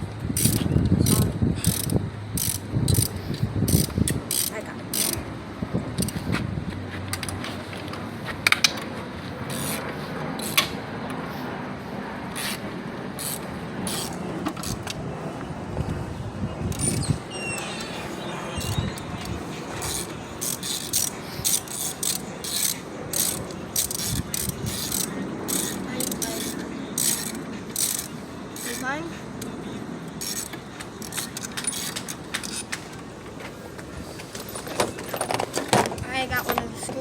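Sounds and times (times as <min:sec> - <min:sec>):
ratchet wrench clicking: 0:00.4 - 0:05.2, 0:06.0 - 0:06.2, 0:09.5 - 0:09.8, 0:10.4 - 0:10.7, 0:13.2 - 0:15.0, 0:16.7 - 0:17.9, 0:18.6 - 0:28.8, 0:30.1 - 0:32.9.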